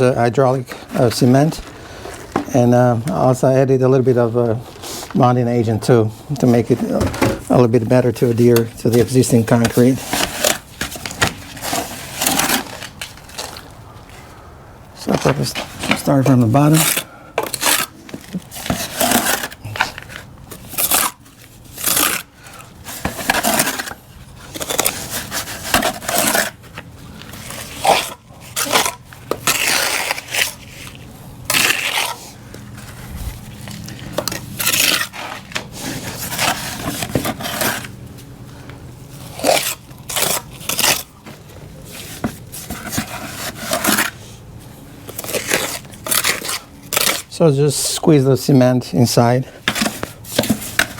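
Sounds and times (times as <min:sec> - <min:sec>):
hand tool scraping wet cement: 0:15.0 - 0:26.6, 0:27.3 - 0:38.0, 0:39.2 - 0:41.2, 0:41.9 - 0:44.4, 0:45.1 - 0:47.9.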